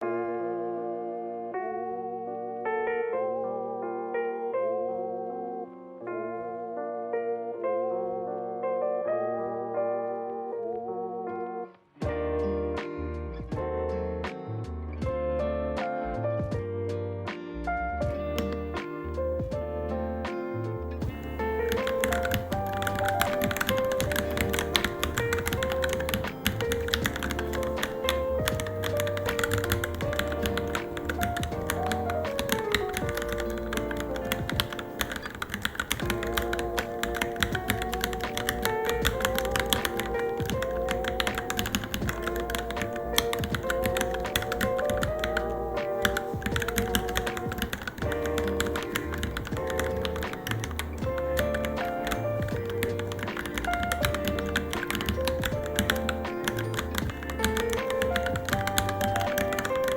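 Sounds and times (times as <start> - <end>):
background music: 0.0 - 59.9
mechanical keyboard typing: 18.3 - 20.1, 21.0 - 59.9.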